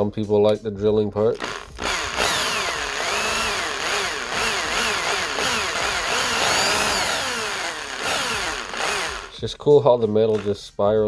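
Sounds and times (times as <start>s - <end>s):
electric drill cutting metal: 1.4s - 9.4s, 10.3s - 10.5s.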